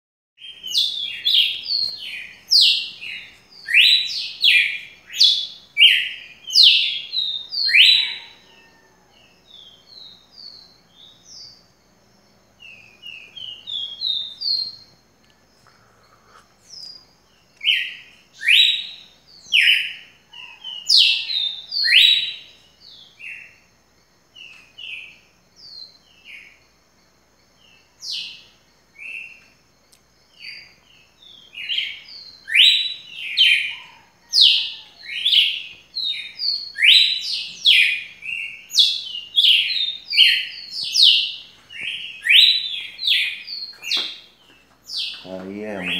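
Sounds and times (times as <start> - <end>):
songbird whistled phrases: 0.4 - 8.4, 17.6 - 22.5, 31.6 - 44.1
birds chirping: 0.4 - 45.9.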